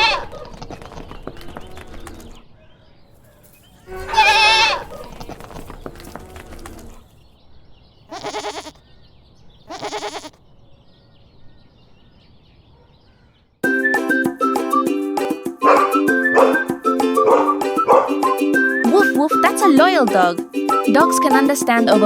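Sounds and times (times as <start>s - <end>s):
goats bleating: 0.0s - 2.4s, 3.8s - 7.1s, 8.1s - 8.8s, 9.7s - 10.4s.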